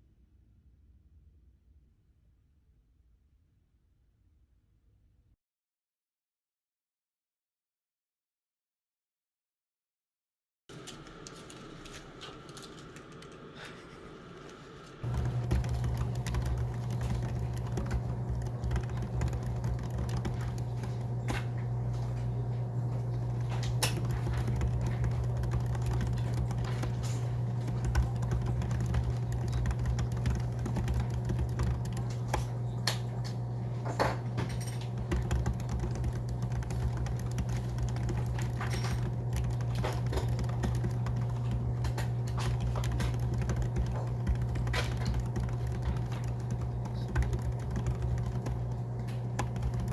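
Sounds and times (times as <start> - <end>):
steady low hum: 10.9 - 49.9
keyboard key clicks: 15.0 - 21.8, 23.5 - 33.4, 34.6 - 49.9.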